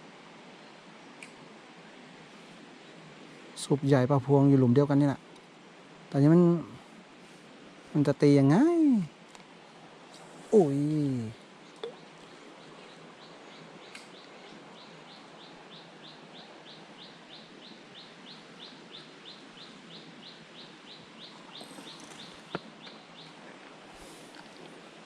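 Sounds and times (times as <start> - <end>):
stream running: 0.0 - 25.0
bird chirping: 10.5 - 24.5.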